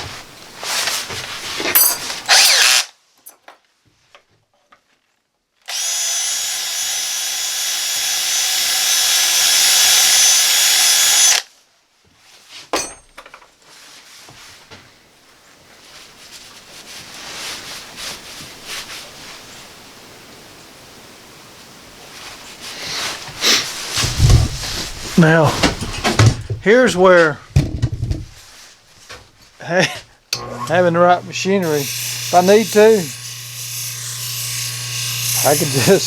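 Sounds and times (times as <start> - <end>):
electric drill motor whining: 2.3 - 2.8, 5.7 - 11.4, 30.4 - 36.0.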